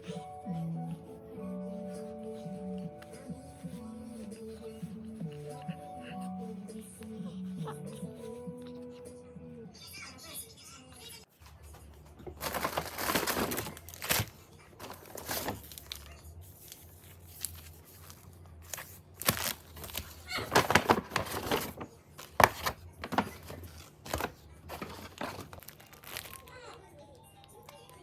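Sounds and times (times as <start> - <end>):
food packaging rustling: 11.4 - 26.6.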